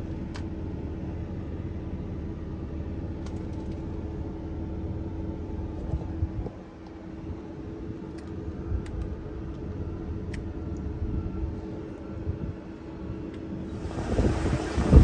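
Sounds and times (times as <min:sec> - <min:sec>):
faint steady hum: 0:00.0 - 0:15.0
low mechanical rumble: 0:00.0 - 0:15.0.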